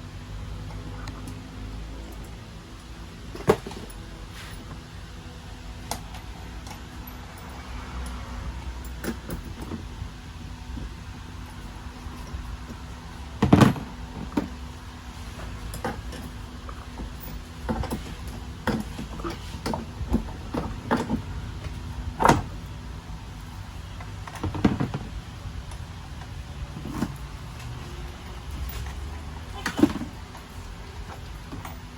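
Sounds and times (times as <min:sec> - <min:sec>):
knocks and clicks of hard parts: 0:13.4 - 0:14.6, 0:15.7 - 0:22.6.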